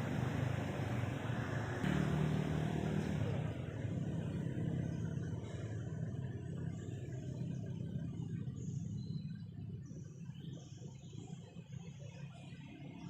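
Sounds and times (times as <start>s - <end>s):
vehicle engine passing by: 0.0s - 8.8s.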